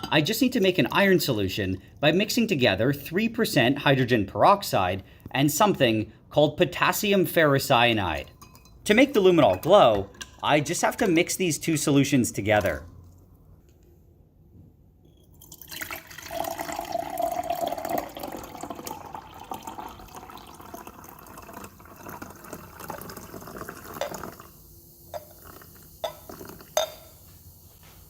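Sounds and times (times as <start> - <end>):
liquid pouring and splashing: 15.3 - 27.6.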